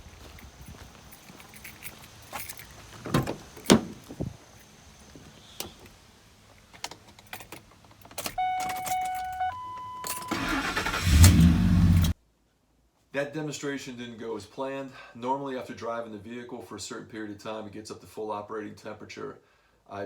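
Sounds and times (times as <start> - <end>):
keys jangling: 0.2 - 3.8, 6.8 - 10.3
car door and ignition clicks: 8.1 - 12.2
car warning chime: 8.3 - 11.1
engine starter cranking: 10.2 - 12.2.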